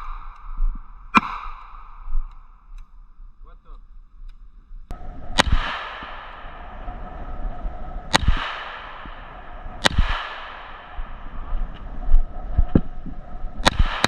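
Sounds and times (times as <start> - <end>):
gunshots with echo: 5.3 - 7.4, 8.1 - 11.4, 13.6 - 14.0.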